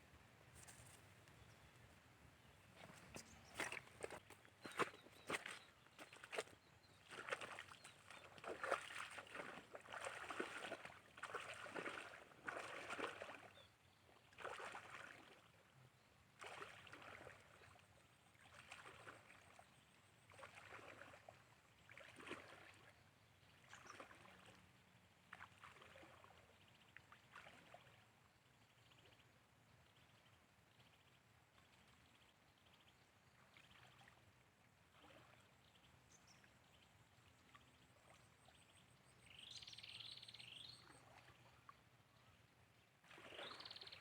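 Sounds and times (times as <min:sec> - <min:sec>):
footsteps sloshing through water: 0:02.6 - 0:28.2, 0:33.4 - 0:39.6, 0:40.6 - 0:42.2, 0:42.8 - 0:44.0.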